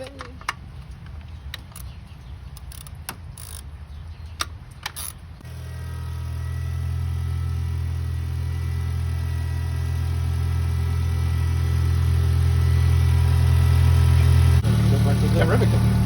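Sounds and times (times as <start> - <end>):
car engine idling: 6.3 - 16.0.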